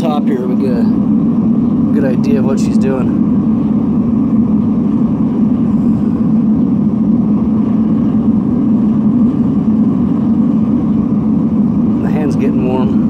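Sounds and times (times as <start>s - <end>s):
furnace burner roaring: 0.0s - 13.0s.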